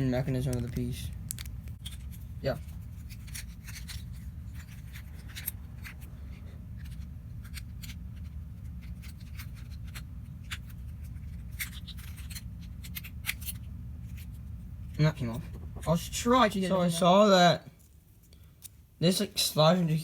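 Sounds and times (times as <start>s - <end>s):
steady low hum: 0.0s - 20.0s
plastic puzzle pieces clicking: 0.4s - 2.0s.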